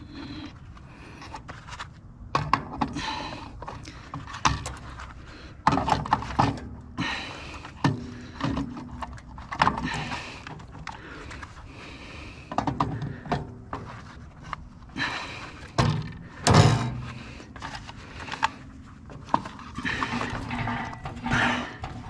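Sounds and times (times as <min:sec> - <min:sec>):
hand tools clanking on metal: 0:19.8 - 0:22.0.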